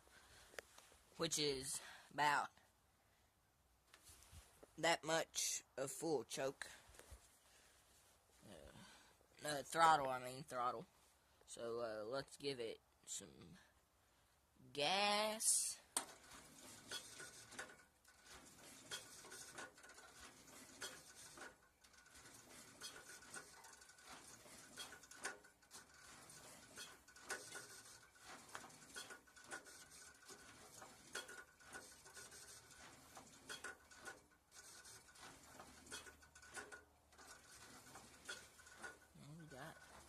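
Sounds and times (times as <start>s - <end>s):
small clicks and rustles: 0.0s - 1.1s, 15.9s - 40.0s.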